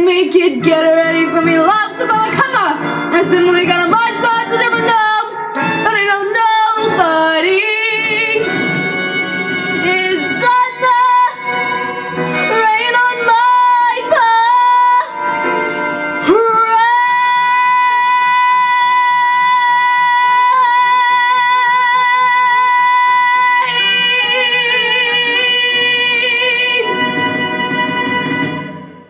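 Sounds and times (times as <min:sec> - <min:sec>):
karaoke backing track: 0:00.0 - 0:29.0
girl singing a long note: 0:09.8 - 0:11.5, 0:16.2 - 0:26.9.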